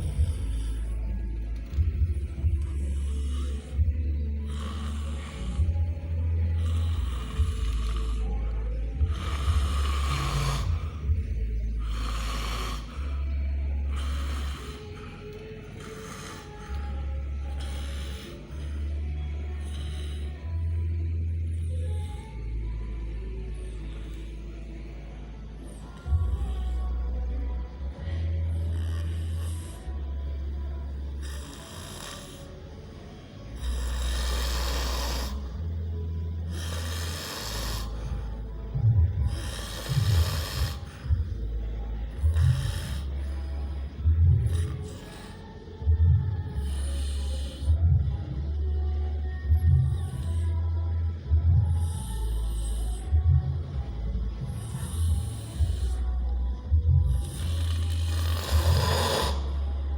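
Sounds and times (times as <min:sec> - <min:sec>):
baby snoring: 0:00.0 - 0:05.8, 0:06.5 - 0:19.0, 0:28.7 - 0:32.7, 0:33.6 - 0:38.5, 0:39.1 - 0:41.5, 0:42.1 - 0:47.9, 0:57.1 - 0:59.9
low rumble: 0:00.0 - 0:59.9.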